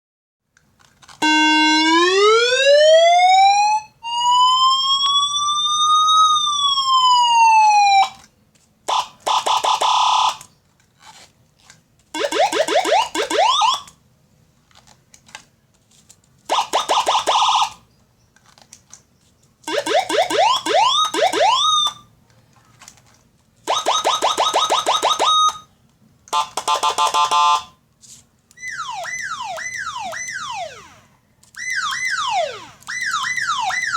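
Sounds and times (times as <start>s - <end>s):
electronic siren tones: 1.2s - 8.2s, 12.2s - 13.9s, 19.7s - 22.1s, 23.7s - 25.7s, 28.6s - 33.9s.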